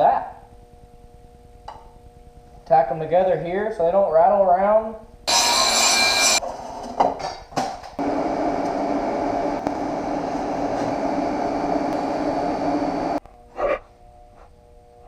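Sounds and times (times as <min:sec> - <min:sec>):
welder arc buzzing: 0:05.3 - 0:06.4, 0:08.0 - 0:13.2.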